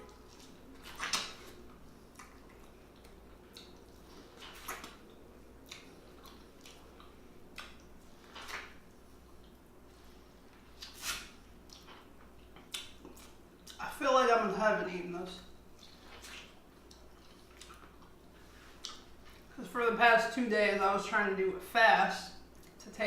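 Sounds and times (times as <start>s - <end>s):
person chewing wetly: 0.1s - 13.8s, 15.7s - 19.5s, 22.5s - 22.8s.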